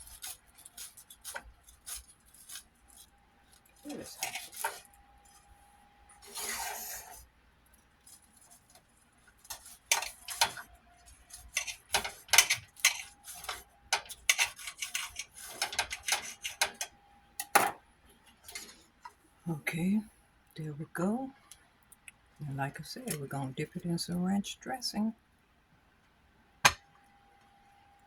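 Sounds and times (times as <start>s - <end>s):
utensils and dishes clattering: 3.9s - 4.8s, 9.5s - 17.8s
rough scrape: 3.9s - 4.9s, 6.2s - 7.2s.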